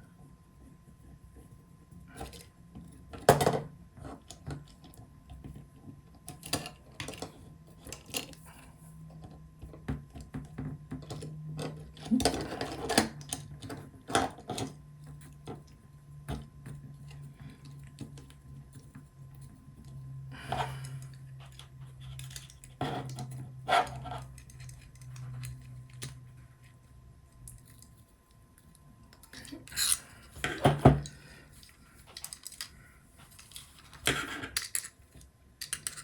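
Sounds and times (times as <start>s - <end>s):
faint low hum: 0.0s - 36.0s
small parts clicking and knocking: 9.2s - 26.3s, 27.3s - 36.0s.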